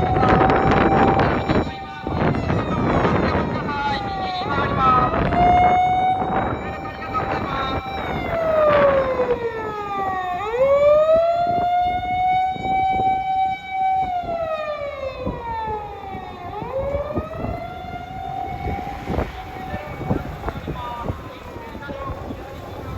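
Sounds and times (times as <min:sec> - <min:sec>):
siren wailing: 0:00.0 - 0:22.9
vehicle rumble: 0:15.7 - 0:22.9.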